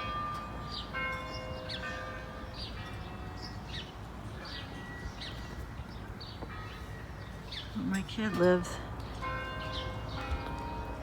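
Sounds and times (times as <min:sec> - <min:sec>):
church bells ringing: 0:00.0 - 0:05.8, 0:06.5 - 0:11.0.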